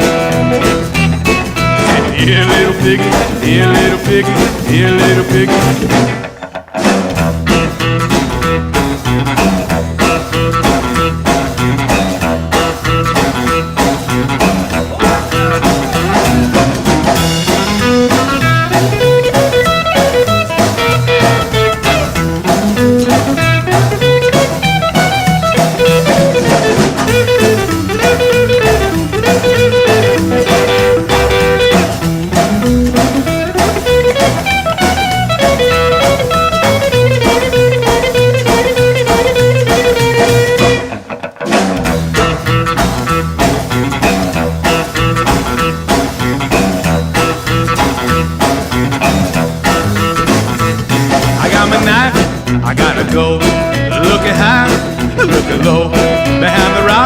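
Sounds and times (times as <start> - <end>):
blues guitar with bass and drums: 0.0 - 57.0.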